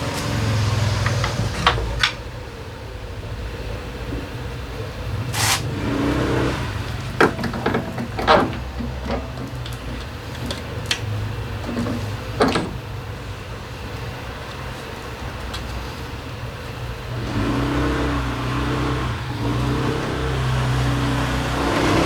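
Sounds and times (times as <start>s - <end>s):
metal tools knocking and clattering: 0.1s - 2.3s, 6.8s - 12.9s.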